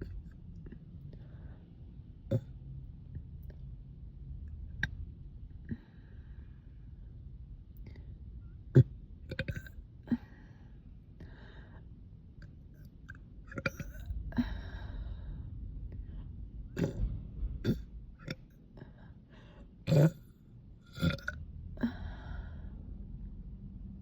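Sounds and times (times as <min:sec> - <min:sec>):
woman burping: 0:08.8 - 0:10.2, 0:13.5 - 0:14.6, 0:16.8 - 0:17.0, 0:19.9 - 0:20.2, 0:20.9 - 0:22.0.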